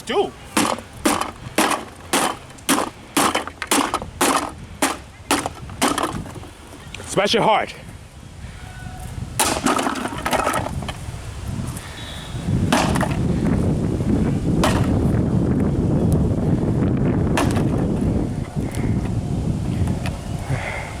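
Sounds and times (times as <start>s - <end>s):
electronics being smashed: 0.5s - 6.8s, 9.4s - 11.0s
wind rumble on microphone: 3.9s - 21.0s.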